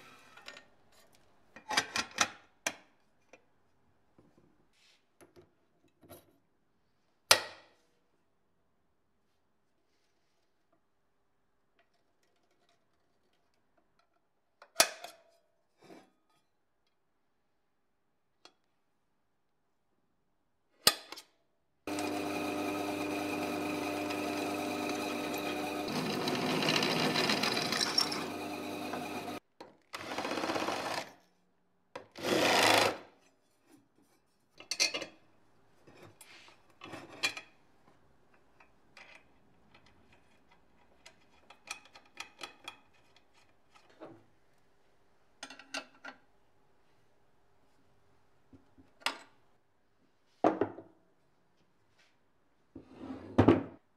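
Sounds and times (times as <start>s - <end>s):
small electric motor running: 21.9s - 29.4s
tools clicking and knocking: 38.6s - 43.9s, 45.4s - 46.2s.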